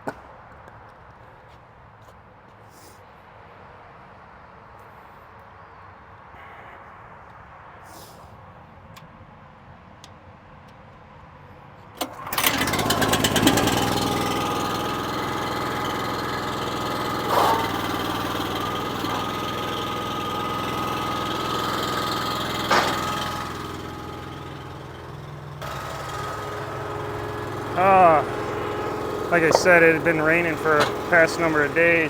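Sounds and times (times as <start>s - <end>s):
small engine running: 12.0s - 32.0s
short knocks: 26.4s - 32.0s.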